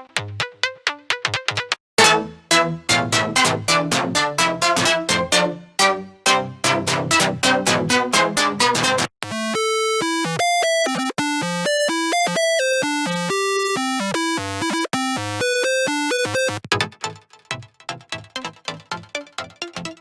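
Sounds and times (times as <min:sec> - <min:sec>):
synthesizer bass notes: 0:06.6 - 0:16.8
rapidly pulsing synth: 0:09.2 - 0:16.7.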